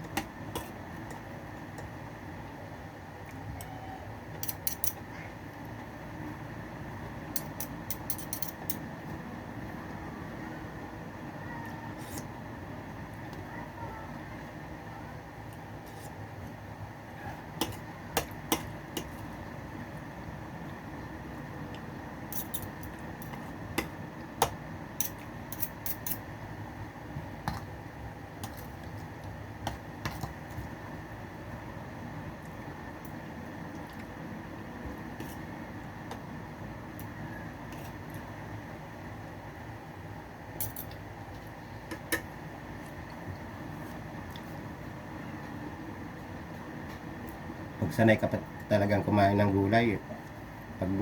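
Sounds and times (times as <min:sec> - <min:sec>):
low background hum: 0:00.0 - 0:51.0
cutlery scraping a plate: 0:07.4 - 0:08.8, 0:22.3 - 0:23.5, 0:25.0 - 0:26.2.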